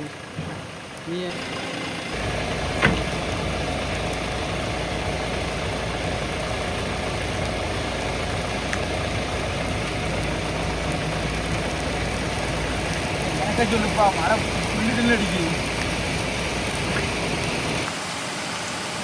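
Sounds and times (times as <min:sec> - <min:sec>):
diesel engine idling: 0:00.0 - 0:18.9.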